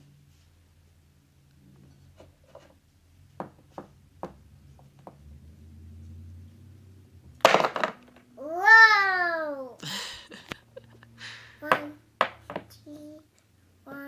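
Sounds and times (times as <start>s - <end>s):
light taps and knocks: 1.8s - 5.3s, 11.7s - 12.8s.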